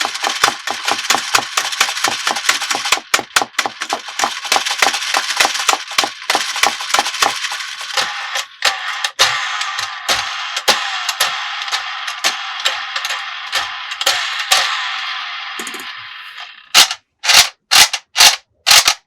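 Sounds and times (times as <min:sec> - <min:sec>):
plastic toy parts clicking: 0:00.0 - 0:14.9, 0:15.6 - 0:19.0
toy electronic tune: 0:07.9 - 0:16.7.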